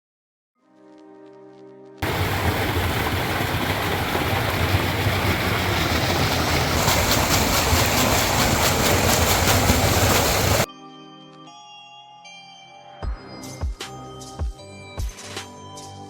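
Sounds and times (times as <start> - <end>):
loud rushing noise with rumble: 2.0 - 10.7
rapid clicking: 3.9 - 10.7.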